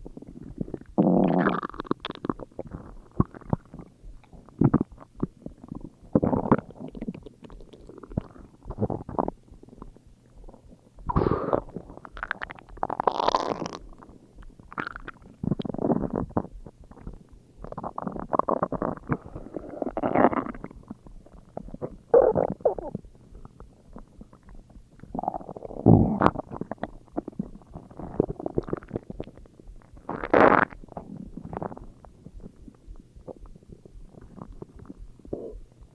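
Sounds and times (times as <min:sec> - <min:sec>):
stomach growling and gurgling: 0:00.0 - 0:35.9.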